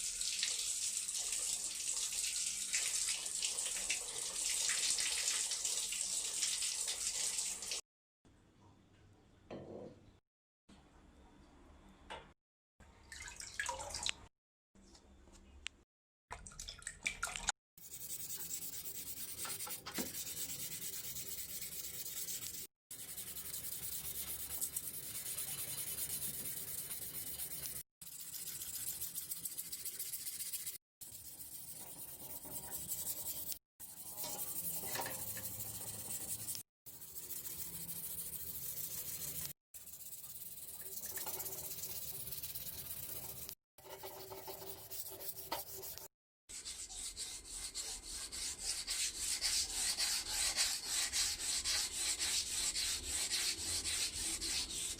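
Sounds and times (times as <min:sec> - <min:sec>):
sandpaper rubbing on metal frame: 0:17.8 - 0:54.9.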